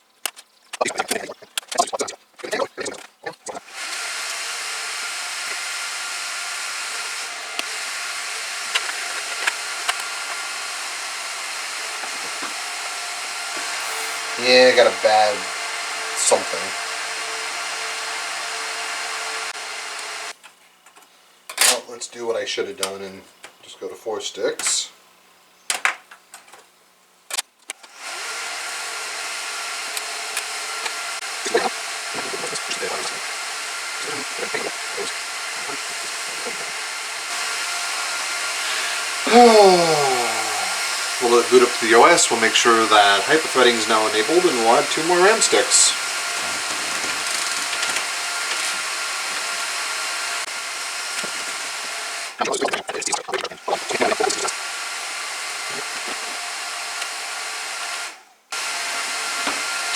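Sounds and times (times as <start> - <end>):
server cooling fans whooshing: 38.5 - 47.2.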